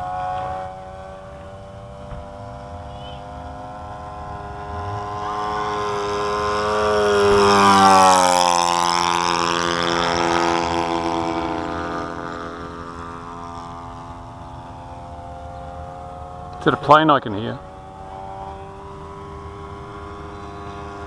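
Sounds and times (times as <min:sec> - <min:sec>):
model plane engine flying past: 0:00.0 - 0:21.0.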